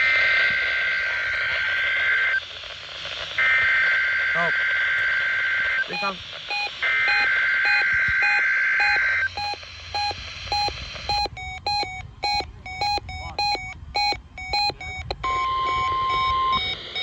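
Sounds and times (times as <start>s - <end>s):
two-tone data screech: 4.3s - 17.0s
short electronic beeps: 5.8s - 17.0s.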